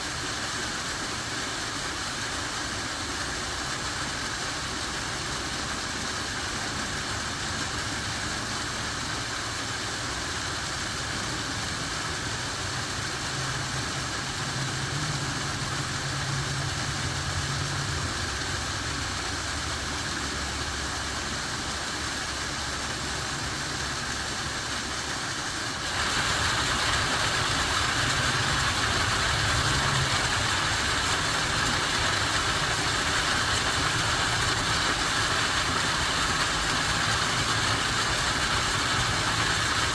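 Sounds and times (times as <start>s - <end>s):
waterfall roaring: 0.0s - 39.9s.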